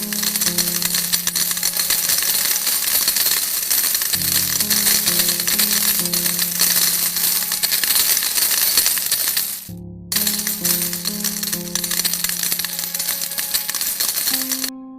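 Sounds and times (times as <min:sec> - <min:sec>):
coins clinking and jingling: 0:00.0 - 0:14.7
background music with low notes: 0:09.7 - 0:14.9.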